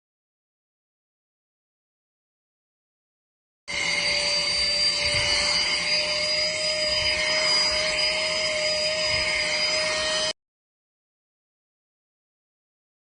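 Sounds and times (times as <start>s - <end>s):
handheld vacuum cleaner running: 3.7s - 10.4s.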